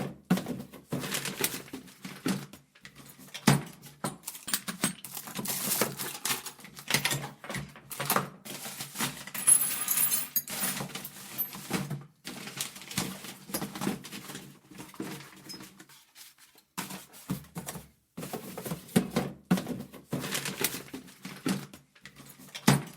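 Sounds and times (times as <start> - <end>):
metal tools clattering: 9.1 - 11.8.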